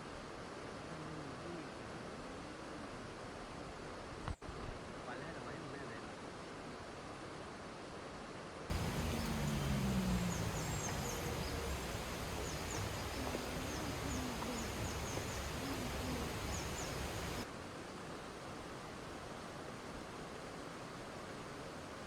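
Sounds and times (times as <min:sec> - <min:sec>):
small birds chirping: 0:08.7 - 0:17.5
steady noisy background: 0:08.7 - 0:21.6.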